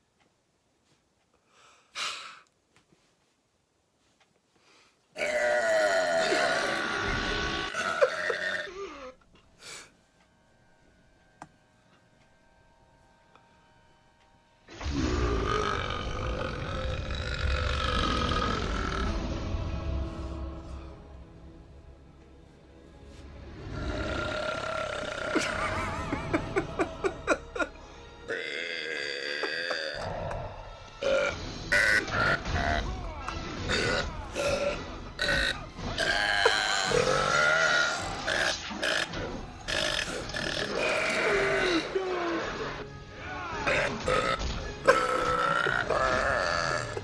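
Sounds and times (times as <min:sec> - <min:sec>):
long loud burps: 0:05.2 - 0:09.2, 0:14.8 - 0:19.4, 0:23.6 - 0:27.7, 0:28.3 - 0:33.1, 0:33.7 - 0:39.1, 0:39.7 - 0:41.9, 0:43.7 - 0:47.0
background music: 0:05.2 - 0:47.0.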